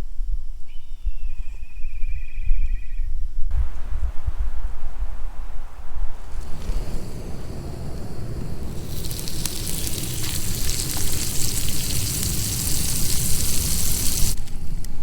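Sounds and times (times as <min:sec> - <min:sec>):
low wind rumble: 0:02.7 - 0:15.0
food sizzling in a hot pan: 0:06.4 - 0:14.4.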